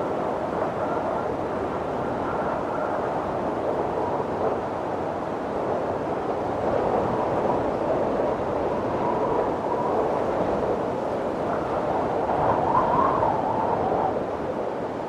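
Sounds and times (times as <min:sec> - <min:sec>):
faint wind whistle: 0:06.6 - 0:15.0.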